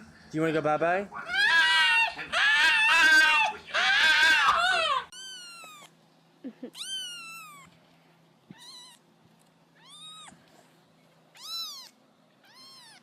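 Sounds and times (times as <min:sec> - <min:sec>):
kitten meowing: 0:01.3 - 0:05.9, 0:06.7 - 0:07.7, 0:08.5 - 0:09.0, 0:09.8 - 0:10.4, 0:11.4 - 0:13.0.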